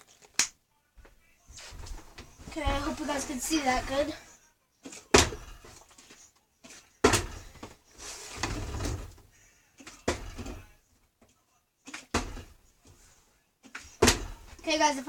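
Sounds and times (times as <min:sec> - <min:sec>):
plastic bottle thudding down: 0:07.0 - 0:07.7, 0:14.0 - 0:14.5.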